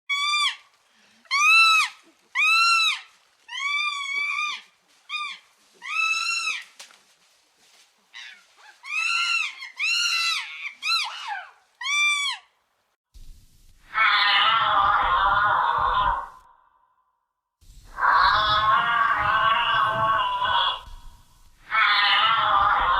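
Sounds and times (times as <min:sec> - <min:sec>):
animal high-pitched cries: 0:00.1 - 0:00.6, 0:01.3 - 0:06.7, 0:08.1 - 0:12.5, 0:13.9 - 0:16.4, 0:18.0 - 0:21.0, 0:21.6 - 0:22.9.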